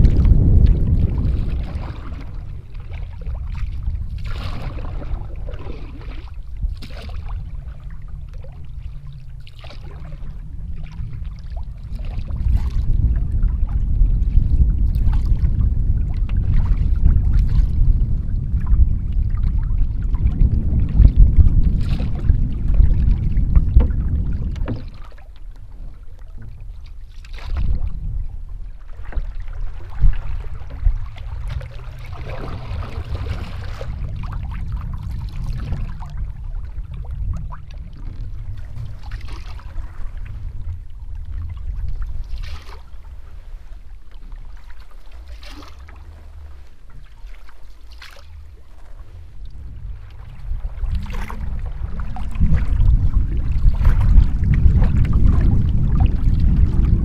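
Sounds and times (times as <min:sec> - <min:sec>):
paddle splashing in water: 0:00.0 - 0:57.0
wind on microphone: 0:00.0 - 0:57.0.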